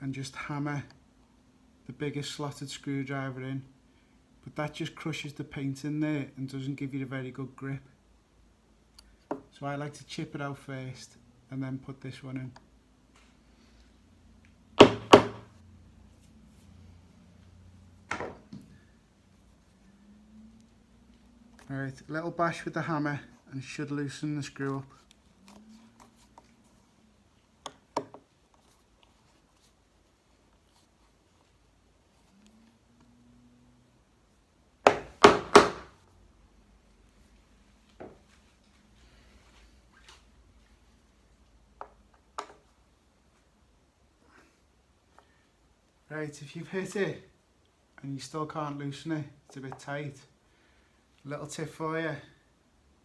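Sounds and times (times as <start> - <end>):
hammer knocking screwdriver handle: 14.8 - 15.4, 34.9 - 35.9.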